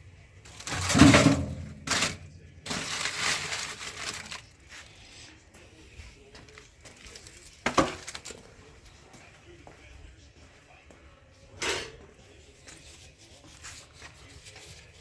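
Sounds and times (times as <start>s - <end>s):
scraper scraping metal surface: 0.5s - 4.1s.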